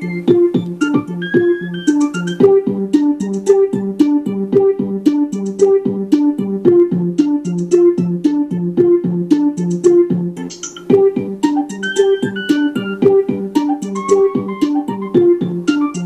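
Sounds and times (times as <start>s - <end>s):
synthesized plucked ringtone tune: 0.0s - 2.6s, 10.5s - 16.0s.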